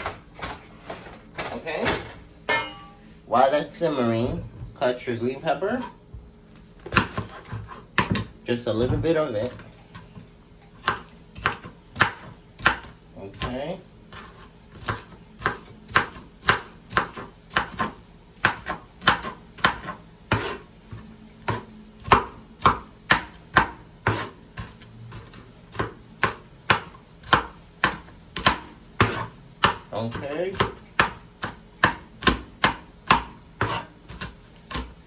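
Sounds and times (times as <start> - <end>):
knife chopping on board: 6.8 - 9.6, 10.8 - 35.0.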